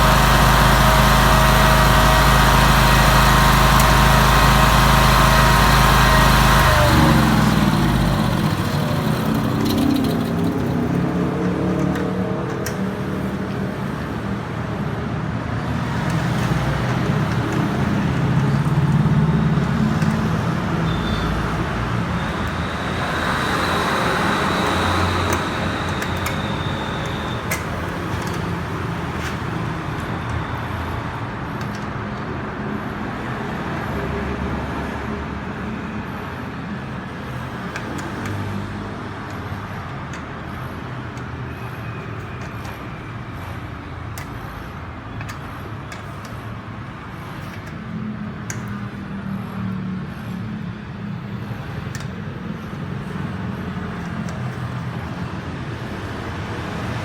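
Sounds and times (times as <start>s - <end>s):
generator engine running: 0.0s - 13.9s, 15.6s - 30.3s.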